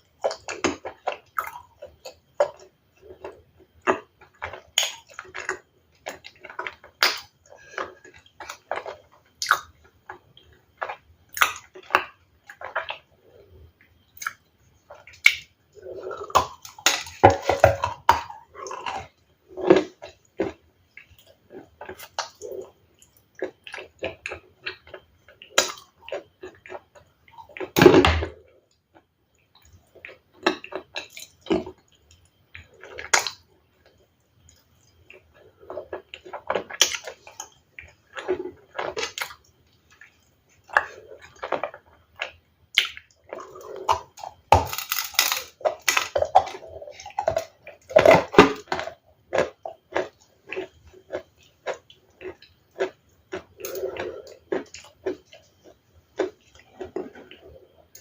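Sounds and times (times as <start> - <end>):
person crunching ice: 44.6 - 46.2.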